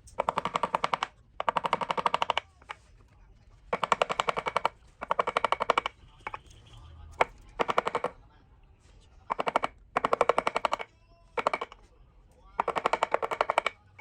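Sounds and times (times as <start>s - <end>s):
rapid tapping of tool on wood: 0.0s - 2.9s, 3.7s - 6.5s, 7.2s - 8.2s, 9.3s - 11.8s, 12.6s - 13.8s.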